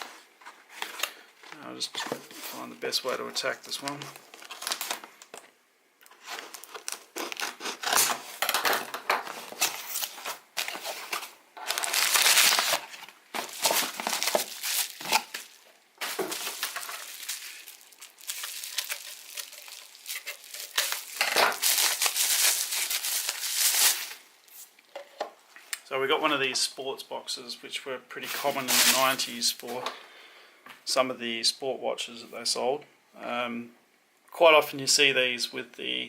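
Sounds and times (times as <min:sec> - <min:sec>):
packaging crinkling and tearing: 0:03.8 - 0:05.4, 0:06.1 - 0:24.3, 0:28.5 - 0:29.2.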